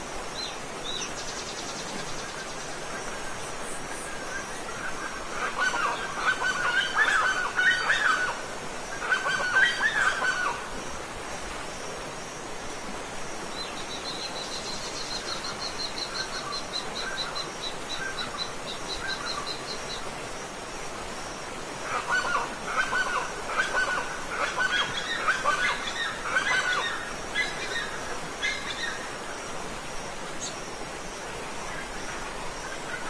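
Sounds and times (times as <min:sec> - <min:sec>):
waterfall rushing: 0:02.1 - 0:33.0
birds calling: 0:21.9 - 0:29.1.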